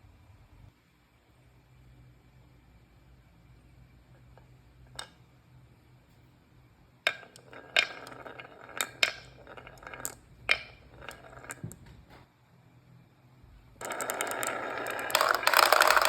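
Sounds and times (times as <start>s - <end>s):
marbles clacking together: 7.1s - 11.8s, 13.8s - 16.0s
rolling marbles rattling: 7.1s - 11.8s, 13.8s - 16.0s.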